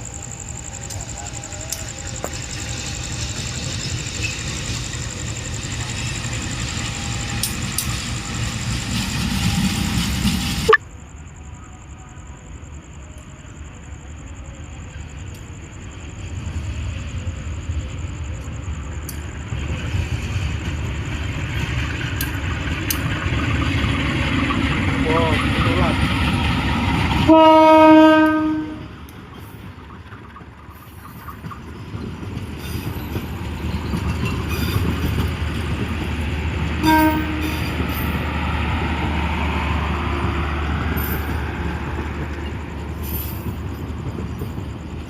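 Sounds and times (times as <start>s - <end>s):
train rumble: 0.0s - 45.0s
click: 7.4s - 7.9s, 18.4s - 19.3s, 22.2s - 23.1s.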